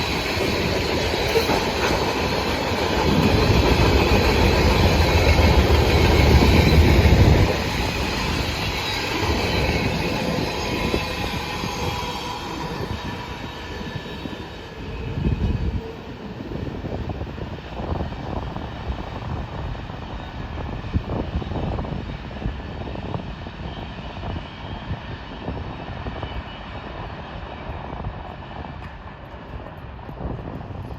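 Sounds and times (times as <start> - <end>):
freight train rolling on rails: 0.0 - 30.9.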